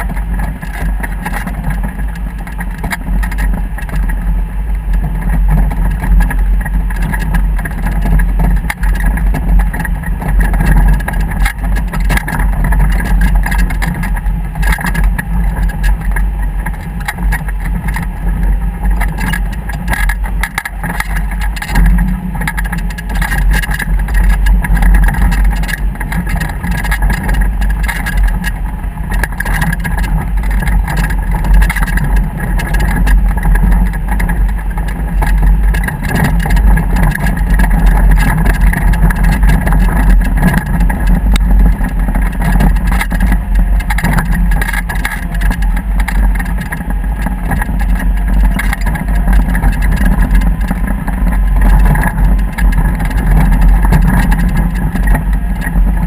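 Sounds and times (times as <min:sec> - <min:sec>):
motorboat engine running: 0:00.0 - 0:56.0.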